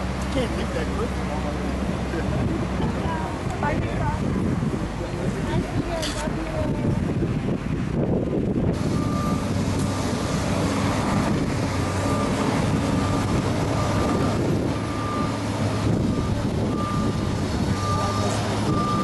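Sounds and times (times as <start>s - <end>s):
heavy machinery engine running: 0.0s - 19.0s
reversing alarm beeps: 8.9s - 9.5s, 11.9s - 19.0s.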